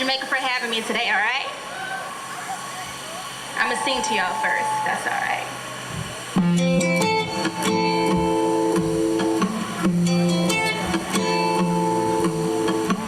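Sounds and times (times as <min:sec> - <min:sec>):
guitar chords strummed: 0:06.4 - 0:13.0.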